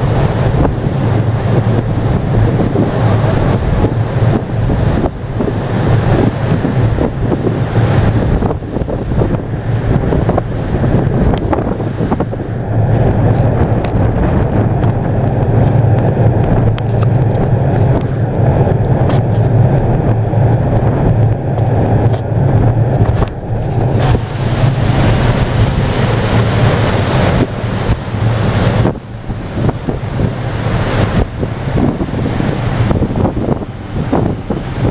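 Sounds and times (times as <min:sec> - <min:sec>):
ship engines humming: 0:00.0 - 0:34.9
wind buffeting microphone: 0:00.0 - 0:34.9
water hissing: 0:23.8 - 0:34.8.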